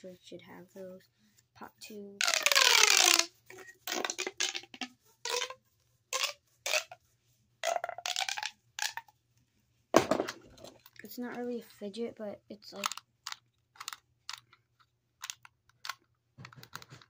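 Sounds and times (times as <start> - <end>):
plastic pop tube crackling: 2.2 - 7.0, 7.6 - 9.2, 10.0 - 11.0, 12.7 - 14.6, 15.2 - 17.0.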